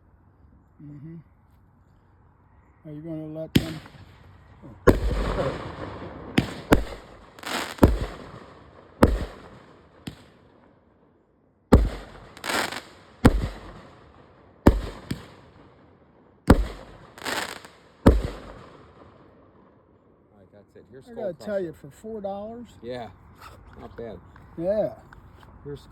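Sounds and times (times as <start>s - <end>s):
firework bangs: 3.5s - 10.6s, 11.7s - 15.8s, 16.4s - 19.4s
firework rushing burst: 3.6s - 10.4s, 11.7s - 15.8s, 16.5s - 19.1s.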